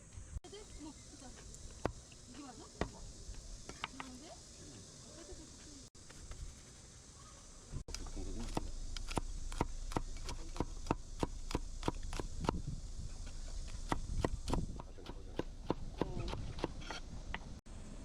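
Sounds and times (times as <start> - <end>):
knife chopping on cutting board: 13.9 - 17.0.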